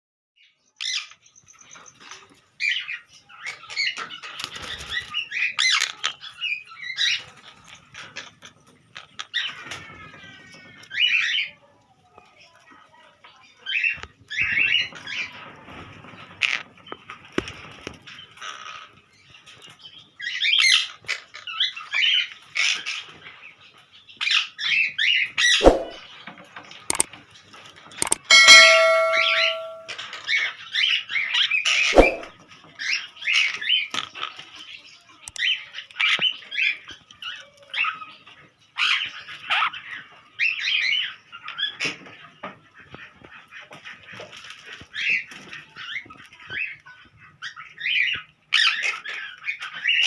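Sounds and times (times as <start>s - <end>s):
sharp knocks: 25.6s - 26.0s
steady ringing tone: 28.0s - 29.9s.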